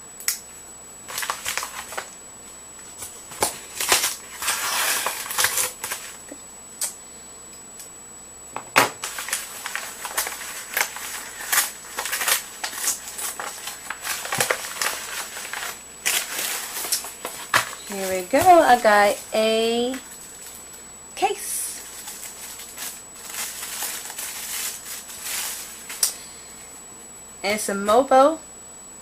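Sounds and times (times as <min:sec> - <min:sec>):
packaging tearing and crinkling: 0:01.1 - 0:02.1, 0:03.0 - 0:06.2, 0:09.0 - 0:20.7, 0:21.8 - 0:26.1
wrapping clicks and rustles: 0:01.1 - 0:02.1, 0:03.0 - 0:06.2, 0:09.0 - 0:20.7, 0:21.8 - 0:26.1.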